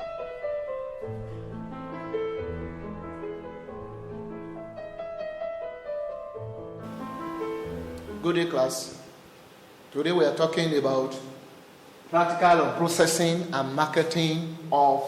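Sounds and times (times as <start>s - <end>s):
piano-led keyboard tune: 0.0s - 8.6s.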